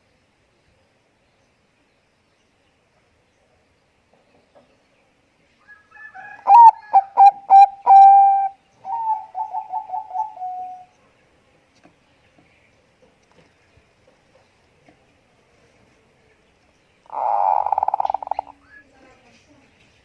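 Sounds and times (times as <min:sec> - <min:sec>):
dove cooing: 0:06.4 - 0:10.9, 0:17.1 - 0:18.8.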